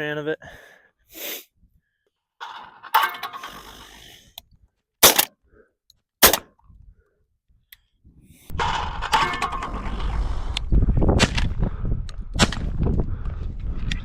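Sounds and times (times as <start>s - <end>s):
shotgun shots: 5.0s - 5.3s, 6.2s - 6.5s
clattering launcher clack: 8.5s - 10.2s.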